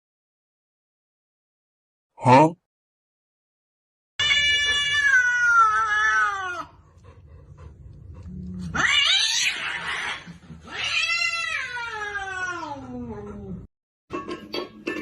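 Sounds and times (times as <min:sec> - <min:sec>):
cat yowling: 0:04.2 - 0:06.8, 0:08.6 - 0:13.4.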